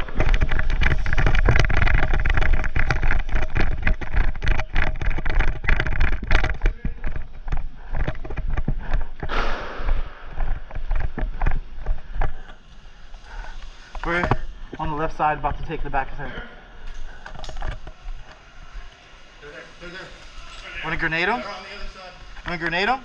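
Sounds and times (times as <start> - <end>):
gear rattling: 0.0 - 9.2
rumble of movement: 0.0 - 15.0
running footfalls: 0.0 - 16.0.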